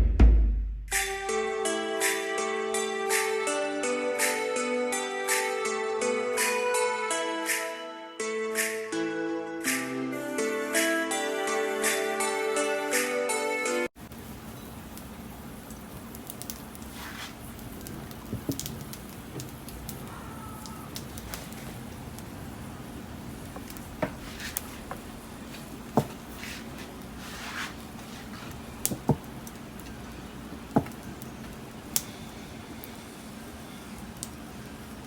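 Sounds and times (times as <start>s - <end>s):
fire crackle: 14.0s - 35.0s
fire hissing: 14.0s - 35.0s.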